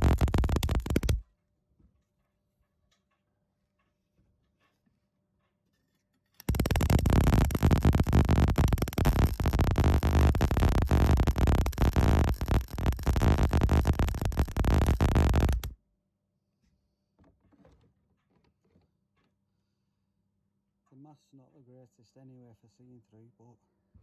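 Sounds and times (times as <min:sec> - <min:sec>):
welder crackling: 0:00.0 - 0:01.2, 0:06.4 - 0:15.8.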